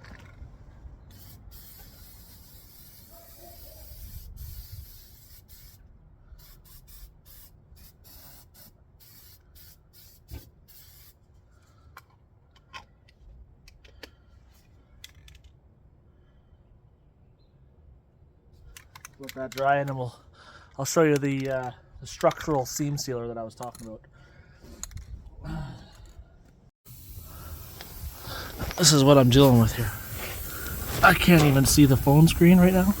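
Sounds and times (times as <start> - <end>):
aerosol spray can spraying: 1.1 - 5.8, 6.4 - 11.2, 26.9 - 33.0.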